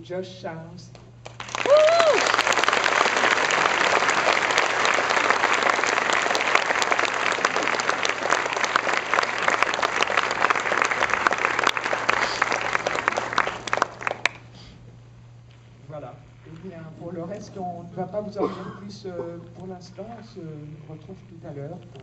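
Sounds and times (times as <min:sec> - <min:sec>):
audience applauding: 0:01.2 - 0:14.7.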